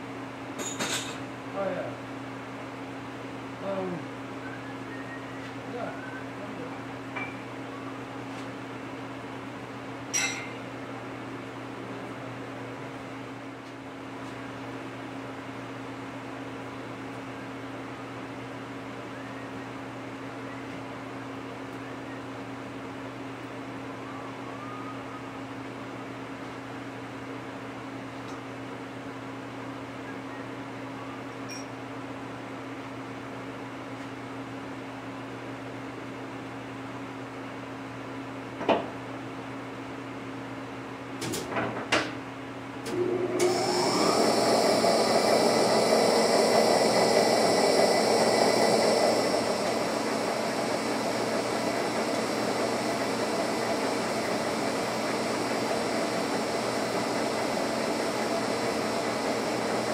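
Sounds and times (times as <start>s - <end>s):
steady electrical hum: 42.1s - 59.9s
electric motor running: 43.0s - 59.9s.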